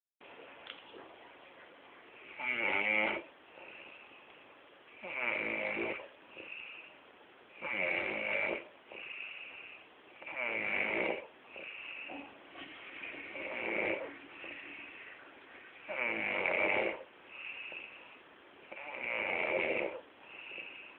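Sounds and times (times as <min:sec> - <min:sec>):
man snoring heavily: 0:02.3 - 0:03.8, 0:05.0 - 0:06.7, 0:07.6 - 0:12.2, 0:13.0 - 0:15.0, 0:15.8 - 0:18.0, 0:18.7 - 0:20.9
soft breath: 0:03.4 - 0:04.7, 0:06.2 - 0:07.1, 0:08.8 - 0:10.1, 0:11.4 - 0:15.9, 0:17.0 - 0:18.5, 0:20.0 - 0:20.9.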